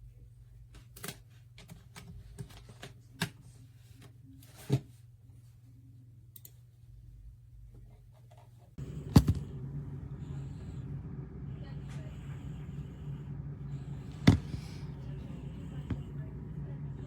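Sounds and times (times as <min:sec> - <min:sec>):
low steady hum: 0:08.8 - 0:17.0.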